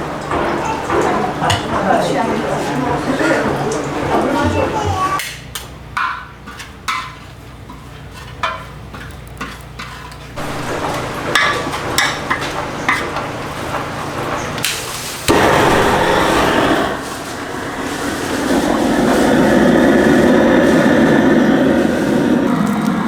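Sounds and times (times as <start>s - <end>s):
utensils clinking and scraping pan: 0.0s - 5.2s, 6.0s - 15.3s
food sizzling: 10.4s - 21.1s.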